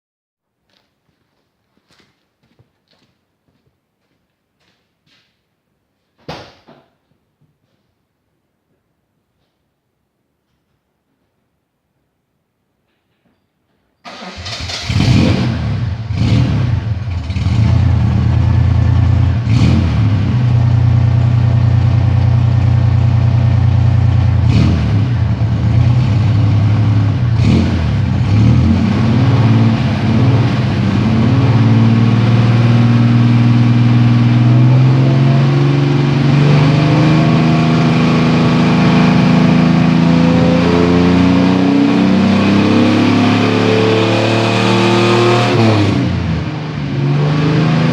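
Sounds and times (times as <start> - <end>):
car engine running rough: 14.2 - 40.2.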